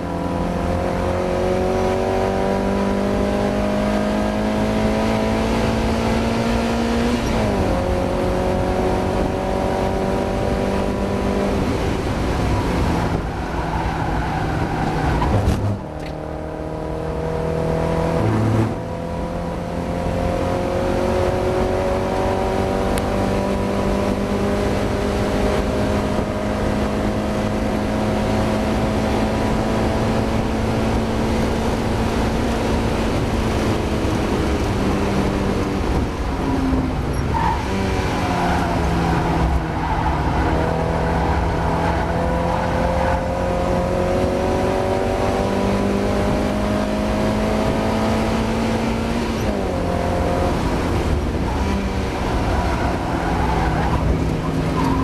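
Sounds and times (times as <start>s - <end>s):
race car engine revving: 0.0s - 55.0s.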